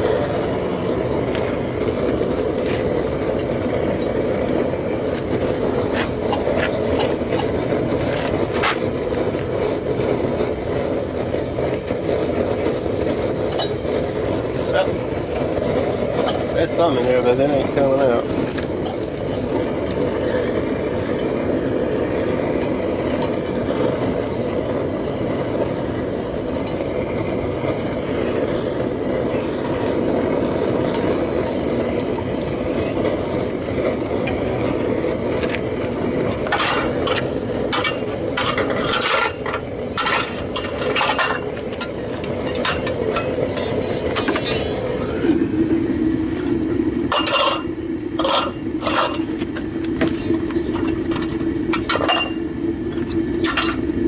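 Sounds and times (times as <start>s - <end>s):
propane burner roaring: 0.0s - 54.0s
metal clinks and scrapes: 36.4s - 44.9s, 47.1s - 49.3s.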